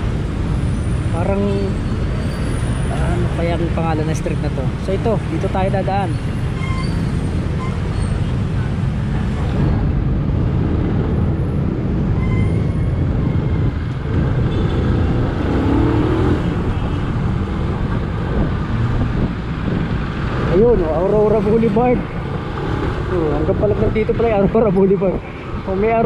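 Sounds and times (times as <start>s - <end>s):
road and wind noise: 0.0s - 26.0s.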